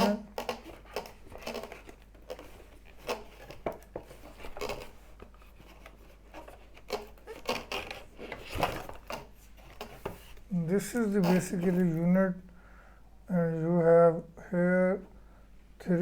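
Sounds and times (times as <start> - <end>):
packaging rustling: 0.0 - 12.1.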